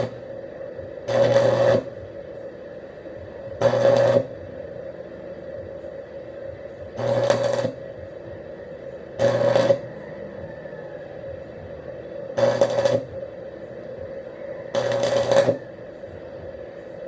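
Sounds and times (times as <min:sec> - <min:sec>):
arc welder buzzing crackle: 0:00.0 - 0:17.0
steady low hum: 0:00.0 - 0:17.0.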